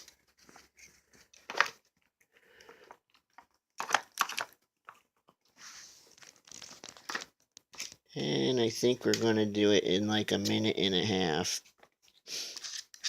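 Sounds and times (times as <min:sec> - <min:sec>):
puzzle parts clacking: 0:03.2 - 0:05.0.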